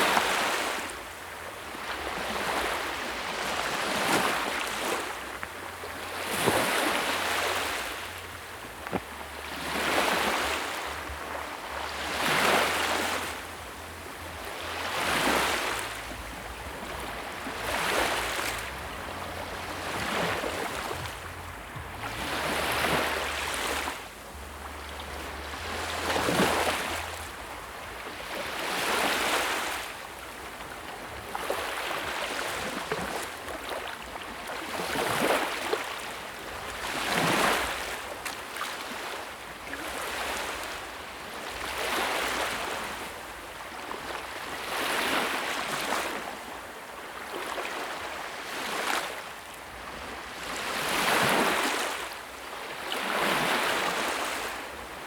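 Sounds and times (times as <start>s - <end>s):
sea waves washing in: 0.0s - 55.0s.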